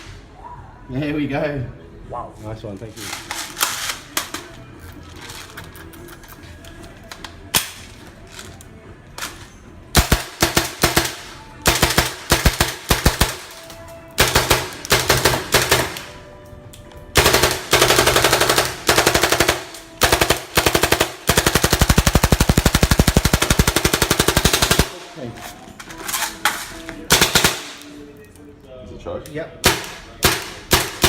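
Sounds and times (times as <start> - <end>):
airsoft rifle firing bursts: 10.0 - 13.4, 14.2 - 16.1, 17.2 - 25.0, 27.1 - 27.8.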